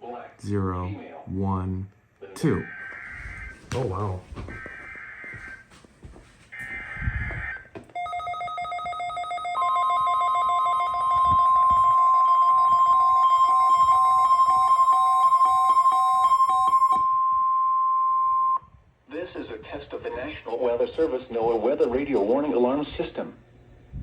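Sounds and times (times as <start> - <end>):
steady warning alarm tone: 4.3 - 5.7, 6.5 - 18.6
radio receiver beeping rapidly: 6.6 - 17.0.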